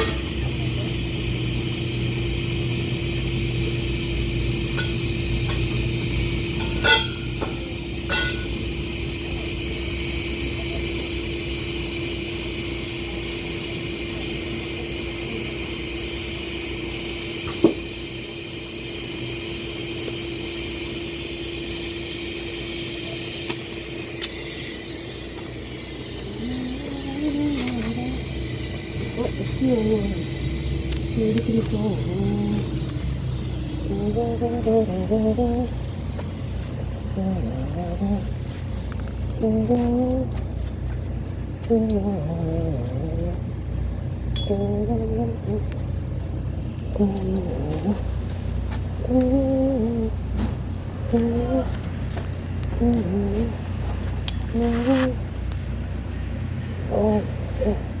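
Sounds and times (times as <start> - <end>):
welding arc hissing: 0.0 - 40.4.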